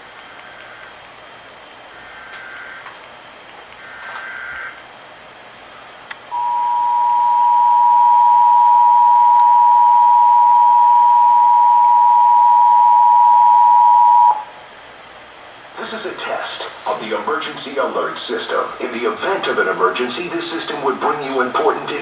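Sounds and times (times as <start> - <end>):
two-tone attention signal: 6.3 - 14.5.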